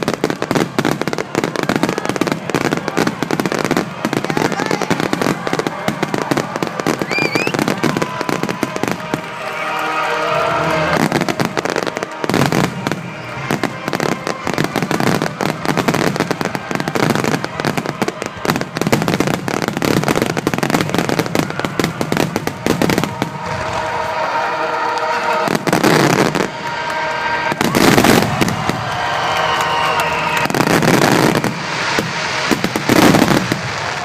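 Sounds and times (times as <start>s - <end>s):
fireworks bursting and crackling: 0.0s - 34.0s
heavy firework booms: 30.4s - 34.0s.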